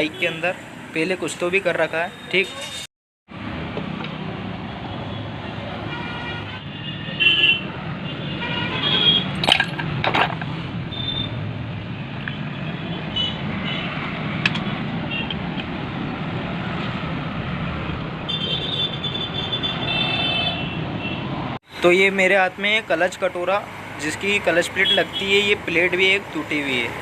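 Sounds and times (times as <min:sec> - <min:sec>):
steady traffic noise: 0:00.0 - 0:27.0
metal tools clinking: 0:09.4 - 0:10.5.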